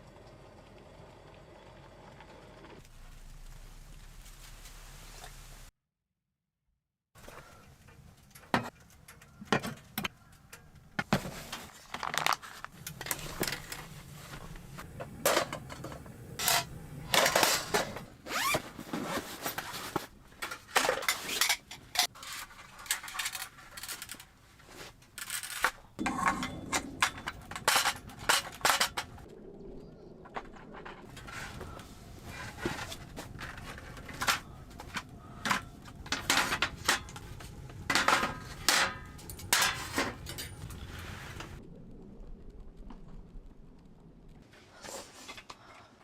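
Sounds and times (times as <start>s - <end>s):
camp gear rustling and clinking: 7.2s - 29.3s, 30.4s - 41.6s.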